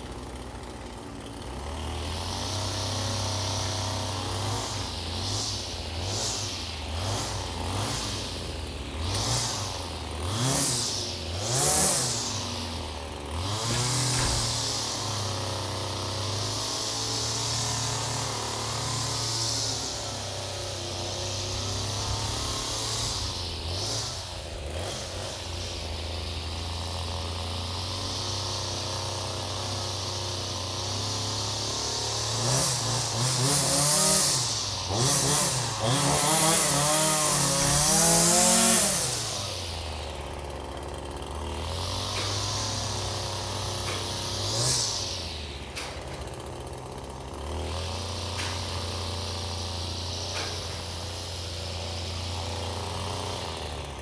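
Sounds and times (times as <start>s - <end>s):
two-stroke engine idling and revving: 0.0s - 54.0s.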